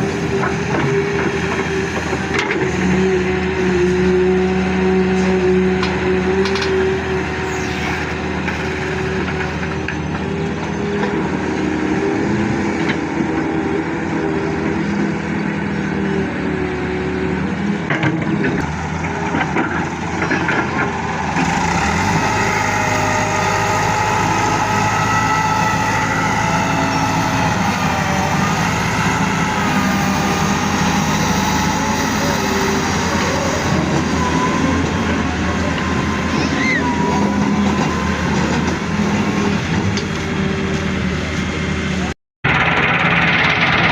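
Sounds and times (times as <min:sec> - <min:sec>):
diesel machinery engines running: 0:00.0 - 0:43.9
wavering high whine: 0:06.6 - 0:10.0.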